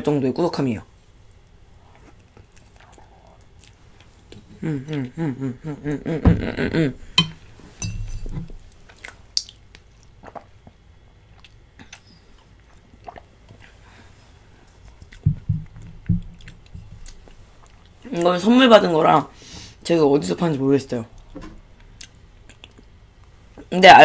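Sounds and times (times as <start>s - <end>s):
quiet chewing: 1.3s - 5.2s, 8.5s - 13.8s, 16.4s - 18.1s, 21.2s - 23.6s
wavering vocal sound: 4.5s - 7.2s.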